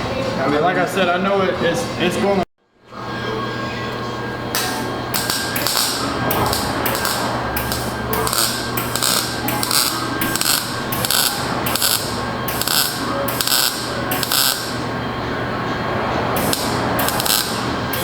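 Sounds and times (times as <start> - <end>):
crackling welding arc: 5.1 - 14.9, 16.4 - 18.0.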